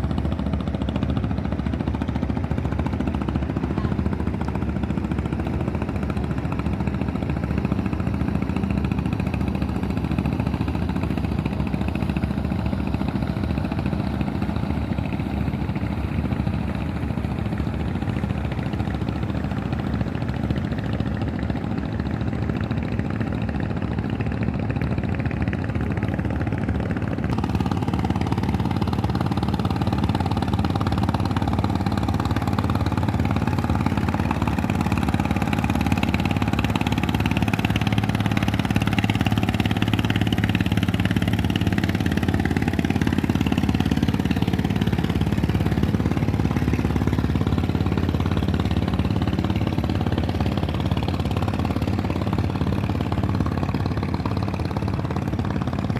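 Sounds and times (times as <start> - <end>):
boat engine running: 0.0 - 55.9.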